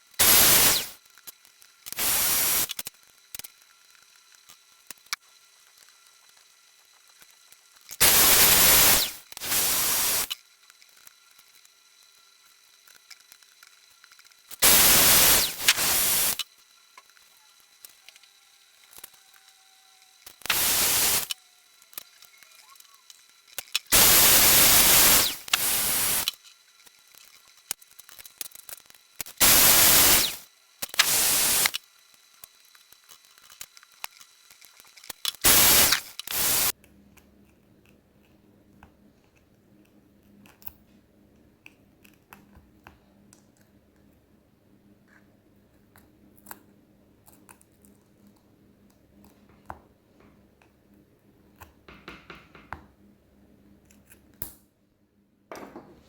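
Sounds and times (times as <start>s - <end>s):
air spray bursts: 0.2s - 1.0s, 2.0s - 2.8s, 8.0s - 10.4s, 14.6s - 16.4s, 20.4s - 21.4s, 23.9s - 26.4s, 29.4s - 31.8s, 35.4s - 36.7s
faint clicks and taps: 45.0s - 53.0s.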